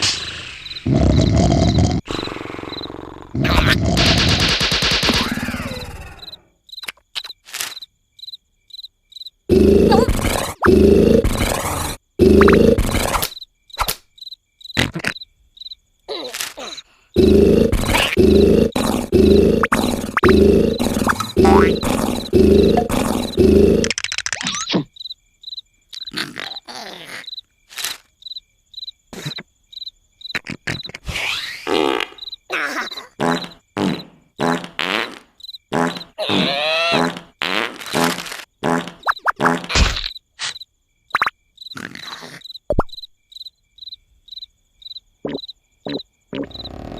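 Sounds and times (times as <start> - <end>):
cartoon snoring: 0.0 - 4.4, 9.5 - 13.3, 17.2 - 24.0, 41.8 - 42.4, 45.3 - 46.9
cricket chirping: 0.0 - 46.9.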